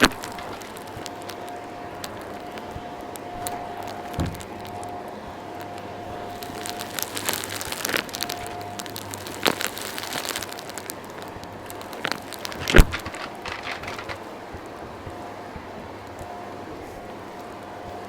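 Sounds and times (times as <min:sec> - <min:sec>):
debris rattling up hose: 0:00.0 - 0:01.4, 0:11.6 - 0:14.3.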